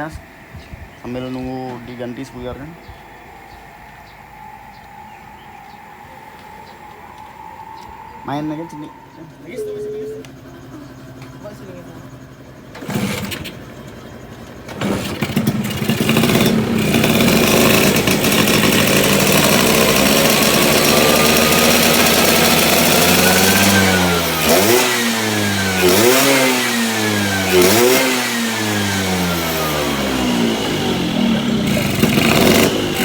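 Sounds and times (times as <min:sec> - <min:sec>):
scooter engine revving: 0:10.4 - 0:33.0.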